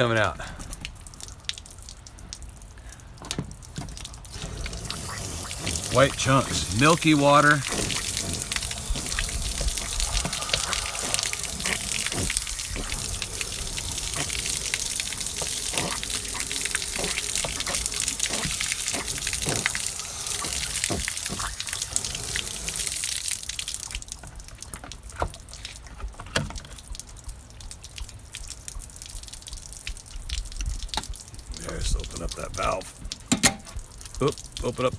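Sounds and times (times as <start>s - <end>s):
water dripping: 0.0s - 34.9s
water rushing and splashing: 4.1s - 23.6s
hose wand spraying: 4.3s - 23.3s.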